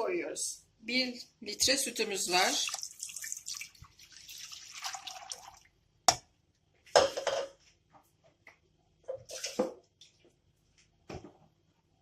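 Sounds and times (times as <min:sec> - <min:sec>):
liquid pouring: 0:02.5 - 0:05.7
kitchenware clattering: 0:07.0 - 0:07.6.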